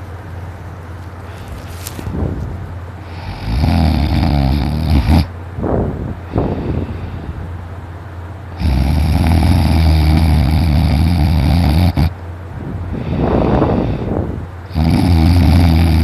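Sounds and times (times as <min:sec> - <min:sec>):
person breathing: 0:01.2 - 0:02.0, 0:06.2 - 0:07.6, 0:12.9 - 0:14.4
loud rattling snore: 0:03.1 - 0:05.3, 0:08.6 - 0:12.2, 0:14.7 - 0:16.0.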